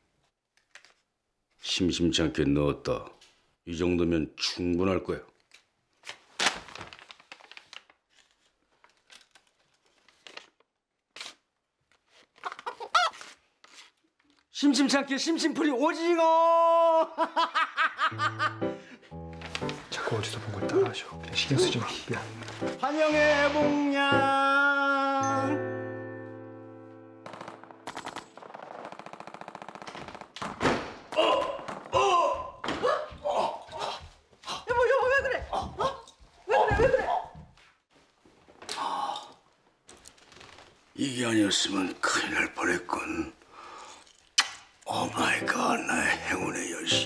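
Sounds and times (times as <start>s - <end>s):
faint rustling and crinkling: 5.4s - 14.6s
machine-gun fire: 27.2s - 31.1s.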